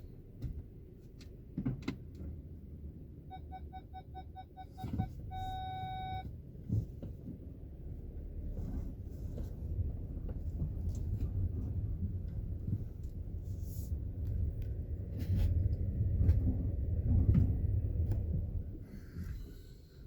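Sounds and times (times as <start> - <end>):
low cabin rumble: 0.0 - 20.0
parking sensor beeps: 3.2 - 6.3
suspension creaking and knocking: 14.2 - 18.8.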